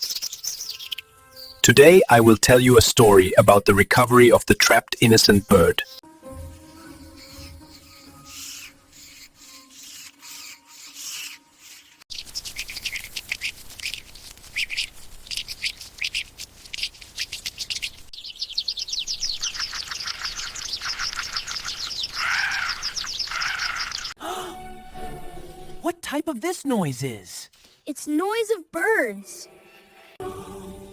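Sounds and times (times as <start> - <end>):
birds chirping: 0.0 - 6.0, 12.1 - 24.2
lower longer bird calls: 12.2 - 24.2.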